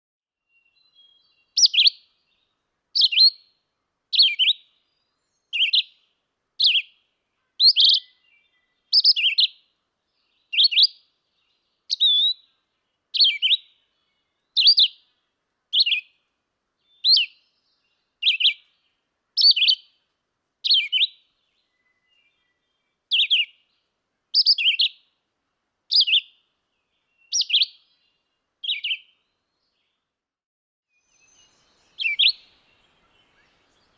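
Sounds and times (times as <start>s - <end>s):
bird singing whistled phrases: 0.5s - 2.0s, 3.0s - 3.5s, 4.2s - 4.6s, 5.2s - 5.9s, 7.6s - 9.6s, 10.5s - 11.0s, 11.9s - 12.5s, 13.2s - 13.8s, 14.5s - 15.0s, 15.8s - 16.1s, 16.8s - 18.7s, 19.4s - 19.9s, 20.7s - 23.6s, 24.4s - 25.0s, 25.9s - 26.4s, 27.1s - 29.7s, 31.0s - 33.9s.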